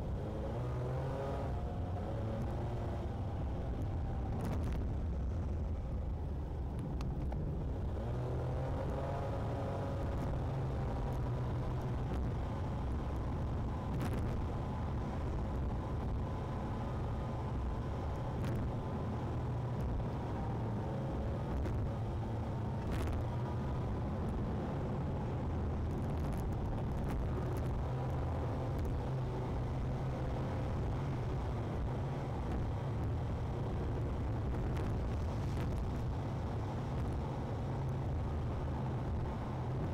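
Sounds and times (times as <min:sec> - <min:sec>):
vehicle engine and road rumble: 0:00.0 - 0:39.9.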